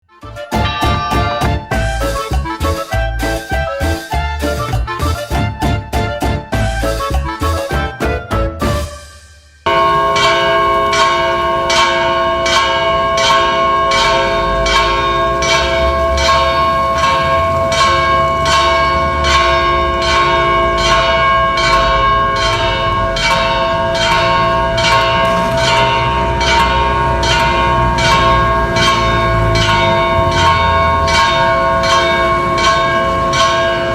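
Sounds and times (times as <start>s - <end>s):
church bells pealing: 0.0s - 7.7s, 9.6s - 33.9s.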